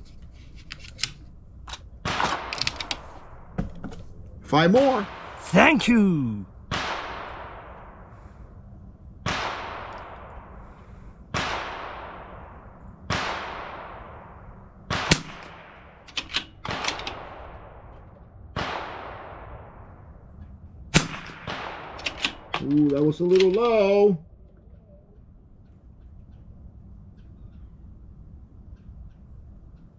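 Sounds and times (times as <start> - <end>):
rifle shots with echo: 5.1 - 7.8, 11.4 - 14.3, 18.6 - 19.9, 21.0 - 22.5.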